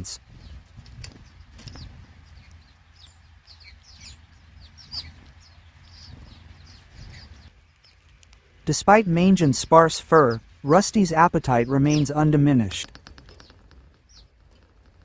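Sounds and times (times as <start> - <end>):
songbirds chirping: 0.0 - 15.0.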